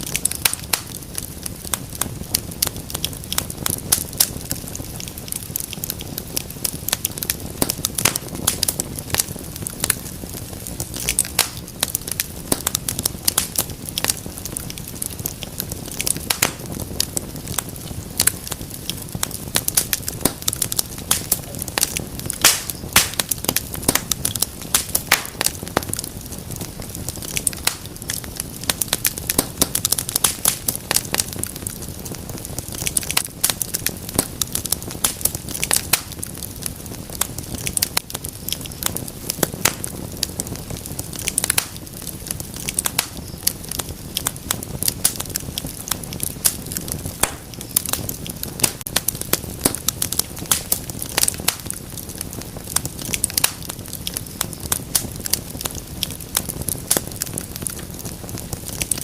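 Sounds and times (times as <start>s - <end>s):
wood fire crackling: 0.0s - 59.0s.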